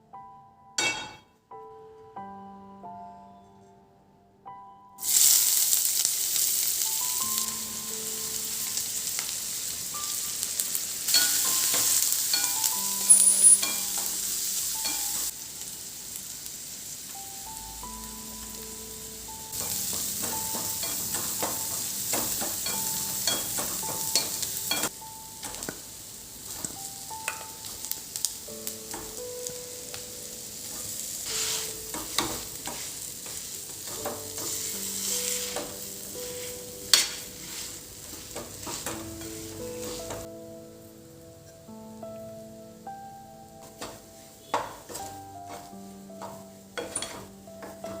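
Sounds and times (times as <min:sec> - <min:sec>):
soft background music: 0:00.0 - 0:48.0
rubbing hiss: 0:30.7 - 0:40.3.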